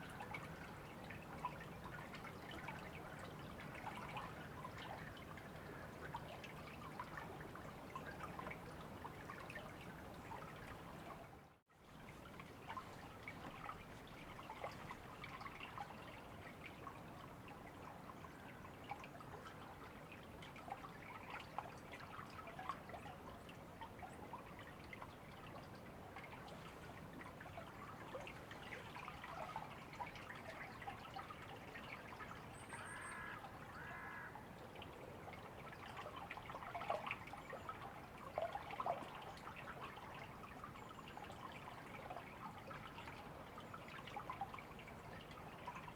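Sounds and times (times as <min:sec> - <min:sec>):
river water trickling: 0:00.0 - 0:45.9.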